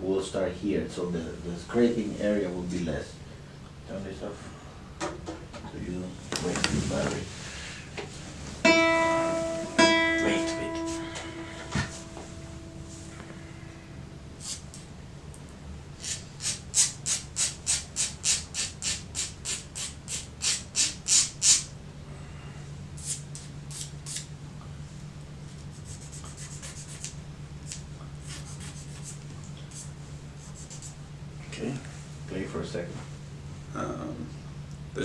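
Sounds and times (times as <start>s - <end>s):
nail file rasping on thumbnail: 16.0s - 21.6s.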